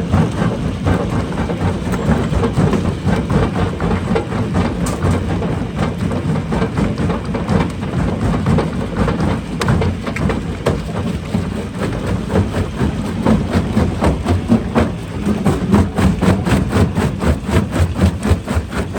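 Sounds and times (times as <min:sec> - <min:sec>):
rock crusher rumbling: 0:07.1 - 0:18.9.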